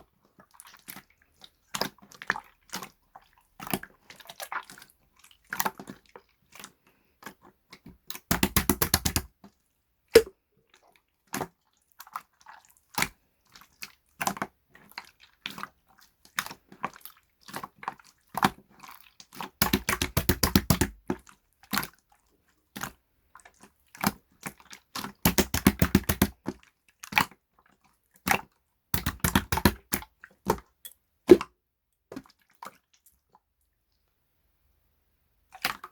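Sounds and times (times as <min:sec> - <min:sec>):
sharp clicks and taps: 0:08.3 - 0:09.3, 0:19.6 - 0:21.0, 0:25.3 - 0:26.3, 0:29.0 - 0:30.0.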